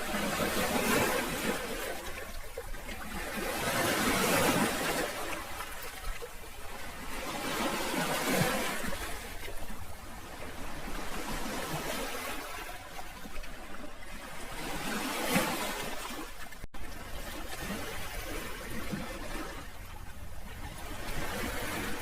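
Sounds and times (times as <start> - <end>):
sea waves washing: 0.0 - 22.0.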